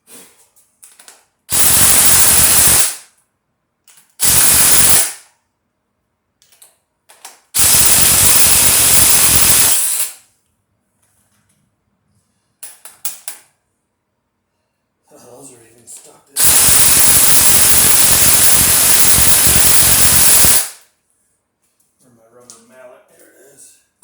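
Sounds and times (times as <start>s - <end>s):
impact wrench bursts: 1.5s - 3.1s, 4.2s - 5.2s, 7.6s - 10.2s, 16.4s - 20.8s.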